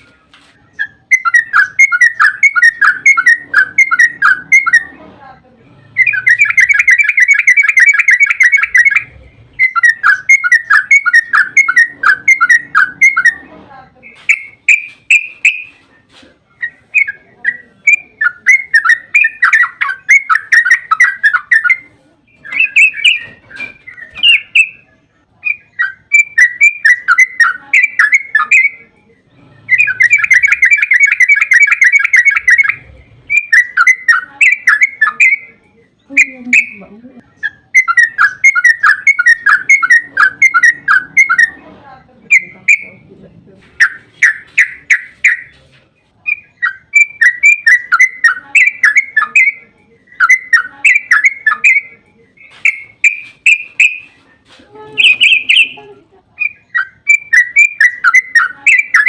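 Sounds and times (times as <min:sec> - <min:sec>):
bird singing bubbling phrases: 0:00.7 - 0:05.0, 0:05.8 - 0:13.4, 0:16.6 - 0:41.6, 0:42.3 - 0:43.1, 0:46.2 - 0:54.1, 0:55.0 - 0:55.8.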